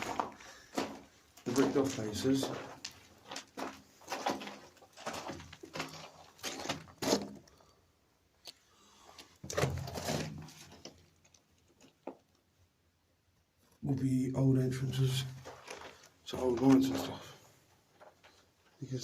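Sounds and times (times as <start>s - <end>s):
footsteps scuffing on floor: 0.0s - 7.2s.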